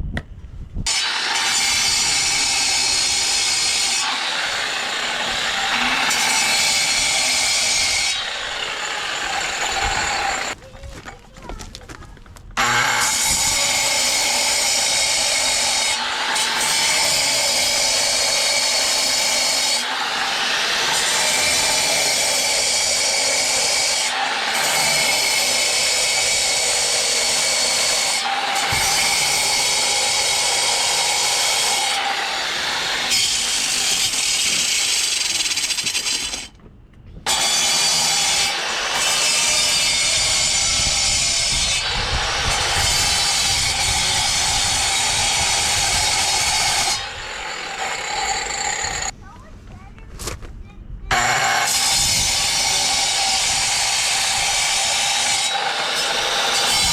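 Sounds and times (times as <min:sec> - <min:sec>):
power tool running under load: 0:00.9 - 0:10.6, 0:51.1 - 0:56.9.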